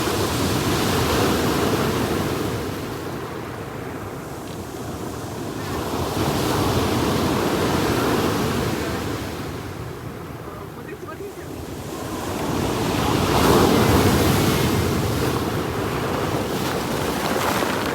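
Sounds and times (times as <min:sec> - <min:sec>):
sea waves breaking on shore: 0:00.0 - 0:17.9.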